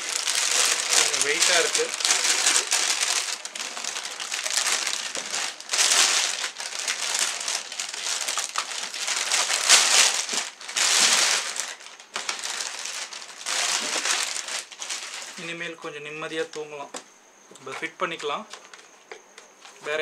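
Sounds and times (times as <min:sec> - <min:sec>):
plastic packaging crinkling: 0:00.0 - 0:15.6.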